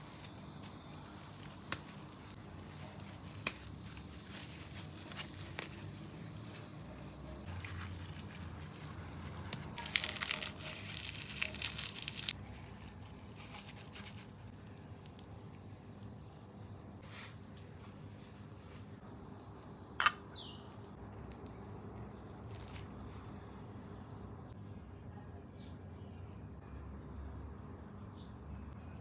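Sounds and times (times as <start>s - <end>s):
crinkling handling noise: 0.0s - 19.1s, 20.5s - 24.3s.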